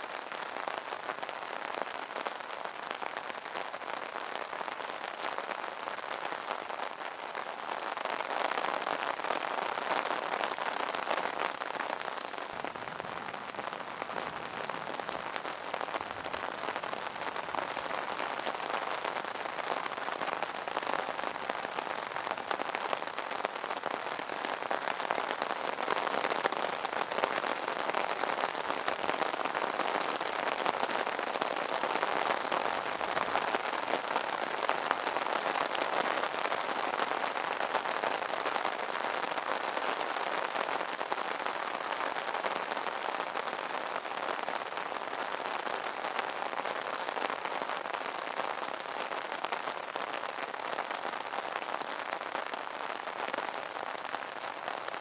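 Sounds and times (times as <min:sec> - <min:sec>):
rain falling on an umbrella: 0:00.0 - 0:55.0.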